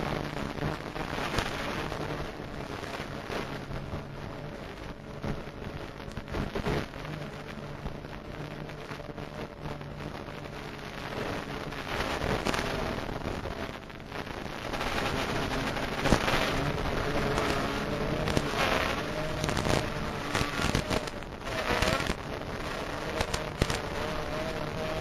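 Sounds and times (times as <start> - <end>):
sharp crackles and knocks: 0.0 - 25.0
wind noise: 9.2 - 25.0
quadcopter motors whining: 14.9 - 22.1.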